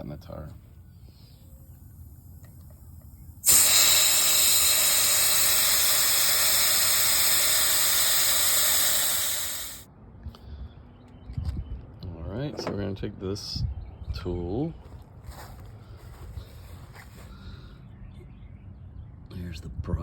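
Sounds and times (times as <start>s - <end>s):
air hissing from tire valve: 1.0s - 9.9s.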